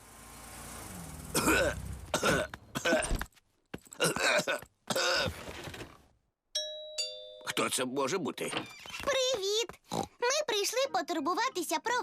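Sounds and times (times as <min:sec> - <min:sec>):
cartoon character coughing: 0:01.3 - 0:03.2, 0:04.0 - 0:05.4.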